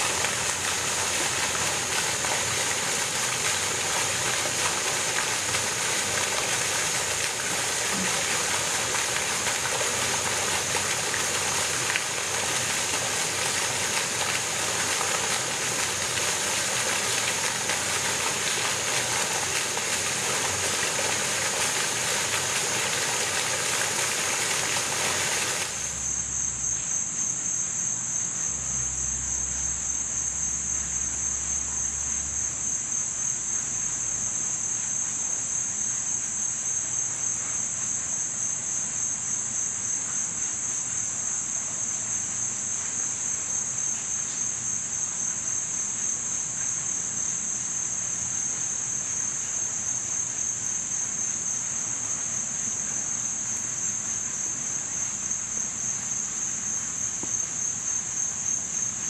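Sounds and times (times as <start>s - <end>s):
flowing water rushing: 0.0s - 26.1s
insects trilling: 0.0s - 59.0s.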